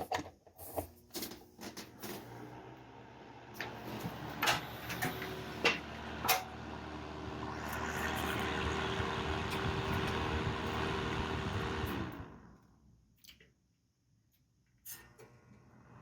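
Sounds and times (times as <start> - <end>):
low motor hum: 2.2 - 12.8
heater fan rushing air: 3.5 - 12.6.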